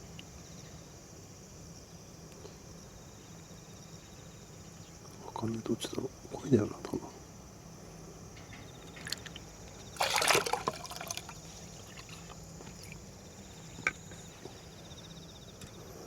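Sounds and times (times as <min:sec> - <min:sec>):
insects trilling: 0:00.0 - 0:16.0
water splashing and sloshing: 0:09.8 - 0:13.2.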